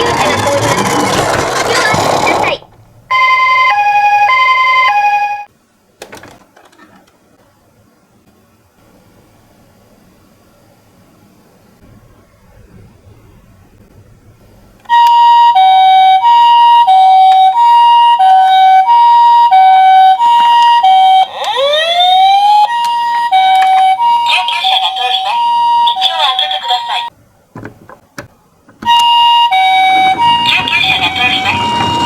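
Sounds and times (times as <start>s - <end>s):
toy ambulance siren: 3.1s - 5.5s, 14.9s - 27.1s, 28.8s - 32.0s.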